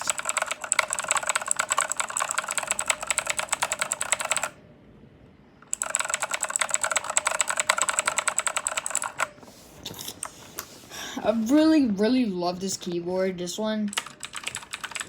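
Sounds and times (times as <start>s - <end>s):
mechanical keyboard typing: 0.0s - 4.6s, 5.7s - 9.3s, 13.9s - 15.0s.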